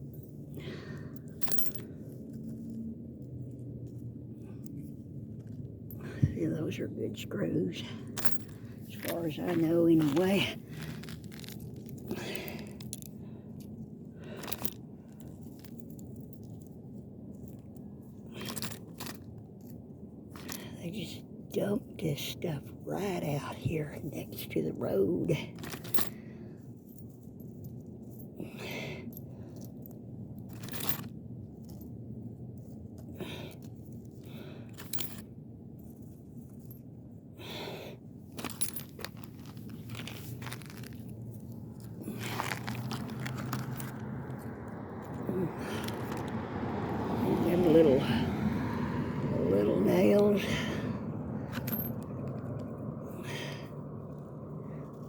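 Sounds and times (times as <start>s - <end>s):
low background rumble: 0.0s - 55.0s
metal screws crunching and clinking: 1.1s - 2.8s, 7.8s - 13.2s, 14.3s - 16.7s, 17.4s - 20.8s, 25.6s - 28.9s, 29.5s - 31.9s, 33.2s - 35.3s, 38.3s - 46.3s, 51.5s - 52.4s.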